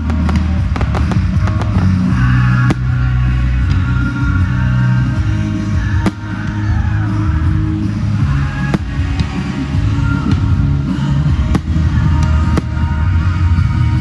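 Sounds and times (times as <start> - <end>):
sharp firework bangs: 0.0 - 3.5, 5.9 - 6.9, 8.6 - 9.9, 11.4 - 13.1
fireworks exploding: 0.0 - 13.6.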